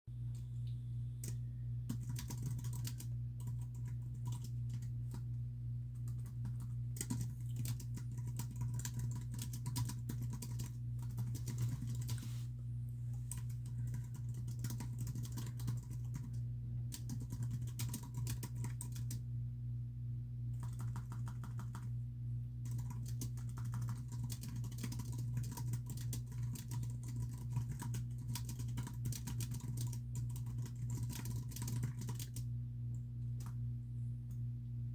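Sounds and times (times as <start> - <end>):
constant low hum: 0.1 - 34.9
keyboard typing: 1.2 - 5.3, 6.0 - 12.4, 13.2 - 19.2, 20.6 - 21.9, 22.6 - 32.5.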